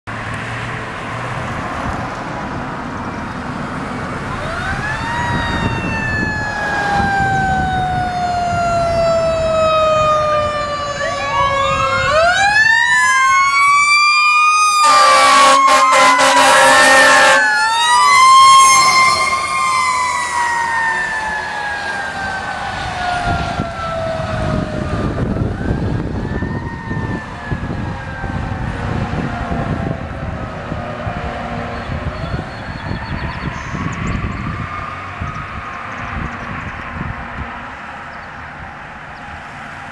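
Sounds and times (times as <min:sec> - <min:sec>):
diesel engine rumble: 0:00.1 - 0:14.5
fire engine siren wailing: 0:03.6 - 0:39.9
loud horn blast: 0:14.8 - 0:17.6, 0:18.6 - 0:19.5, 0:30.7 - 0:32.1.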